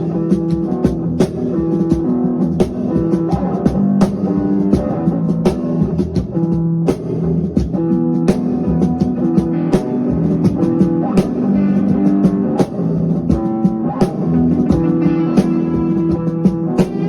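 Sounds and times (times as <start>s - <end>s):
drum beat: 0.0s - 17.0s
guitar: 0.0s - 17.0s.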